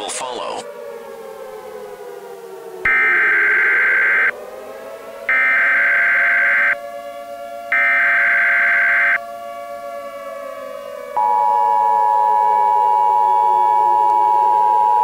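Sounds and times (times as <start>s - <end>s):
steady electronic droning tone: 1.6s - 6.8s, 11.2s - 15.0s.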